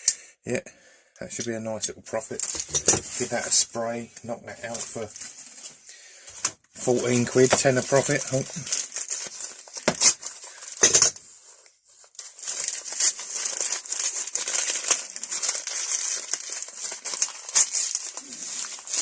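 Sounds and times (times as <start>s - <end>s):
packaging crinkling: 6.8s - 19.0s.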